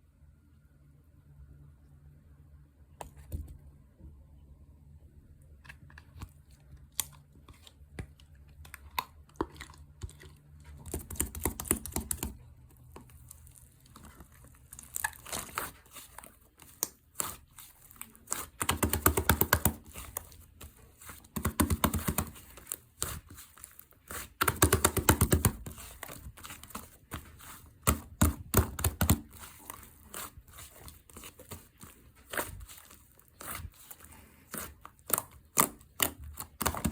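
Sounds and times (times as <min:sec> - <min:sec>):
slime squished by hand crackling: 0:13.0 - 0:36.9.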